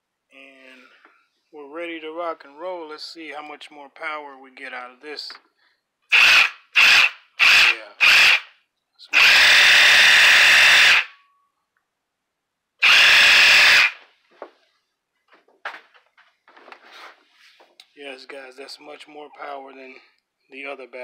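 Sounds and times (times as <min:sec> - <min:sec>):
cordless drill running: 0:06.1 - 0:08.5, 0:09.2 - 0:11.1, 0:12.8 - 0:14.0.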